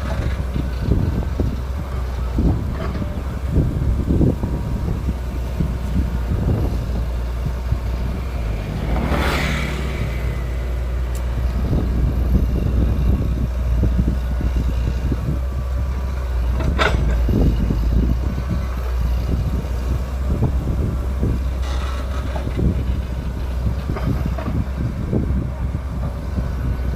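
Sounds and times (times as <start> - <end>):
excavators rumbling: 0.0 - 26.9.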